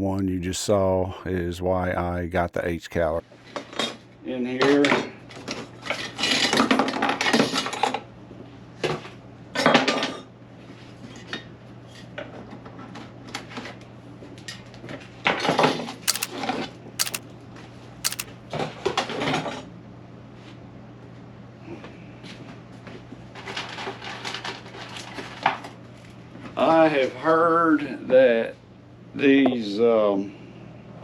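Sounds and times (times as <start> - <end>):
sharp clicks: 16.1 - 16.3, 17.0 - 17.2, 18.1 - 18.3.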